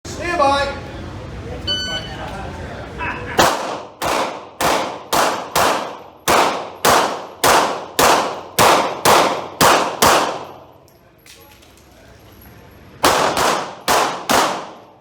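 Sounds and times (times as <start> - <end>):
pistol shots with echo: 3.4 - 10.7, 13.0 - 15.0.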